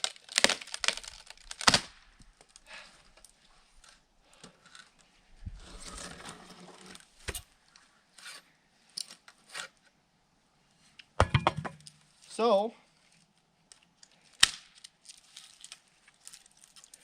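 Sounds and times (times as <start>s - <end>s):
wood cracking: 0.0s - 3.3s
wood fibres tearing: 0.0s - 3.3s, 14.3s - 17.0s.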